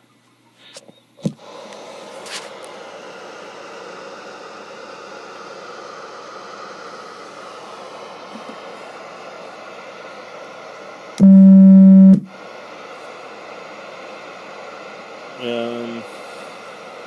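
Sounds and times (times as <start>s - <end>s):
radio static hiss: 15.1s - 17.0s.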